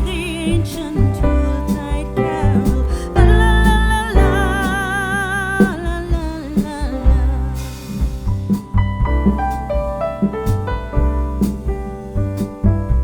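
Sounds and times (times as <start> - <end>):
bass and drum beat: 0.0 - 13.0.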